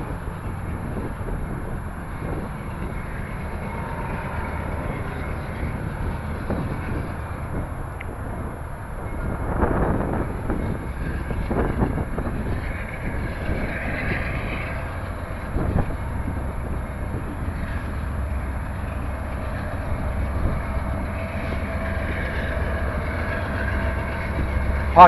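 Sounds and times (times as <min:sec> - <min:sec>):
train wheels rumbling on rail: 0:00.0 - 0:25.0.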